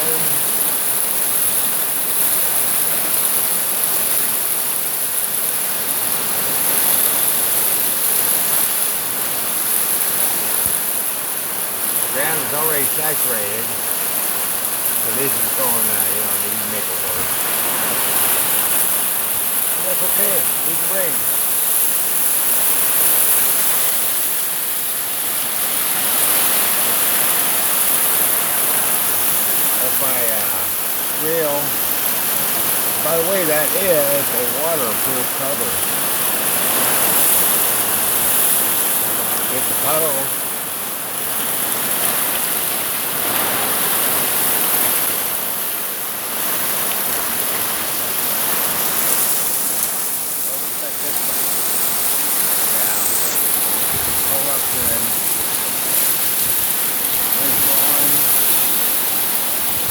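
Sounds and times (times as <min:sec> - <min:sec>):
heavy rain falling: 0:00.0 - 0:59.9.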